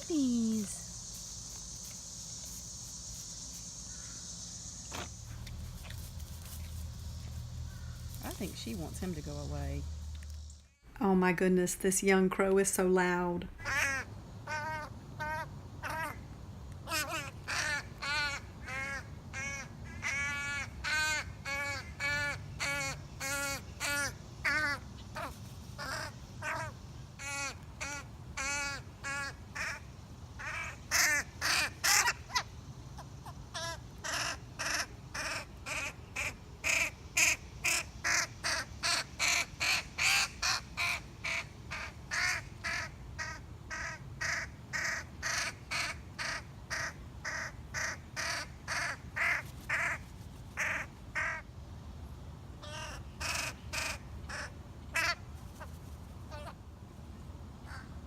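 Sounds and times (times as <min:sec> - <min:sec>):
young crow cawing: 0:07.7 - 0:08.0, 0:13.6 - 0:29.8, 0:30.4 - 0:32.4, 0:33.6 - 0:50.0, 0:52.6 - 0:55.2.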